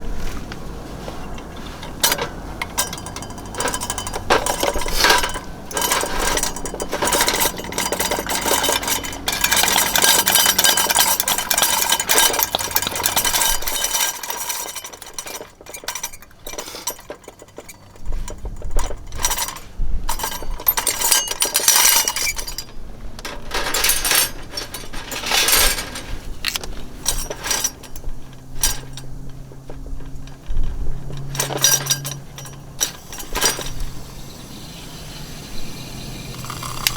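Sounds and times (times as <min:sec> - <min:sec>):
hard objects clinking: 0:01.3 - 0:36.9
wind rumble on microphone: 0:17.9 - 0:21.1, 0:22.1 - 0:36.9.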